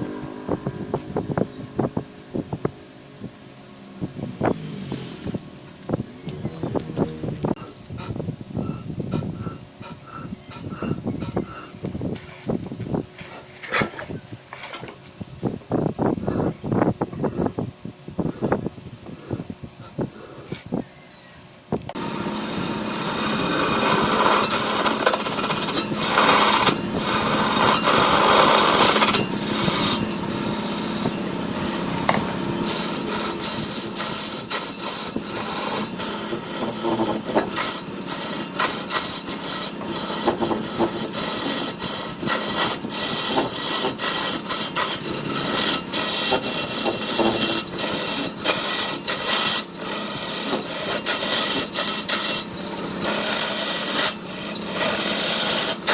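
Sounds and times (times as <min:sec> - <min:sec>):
lathe tool rasping on wood: 0:22.0 - 0:55.9.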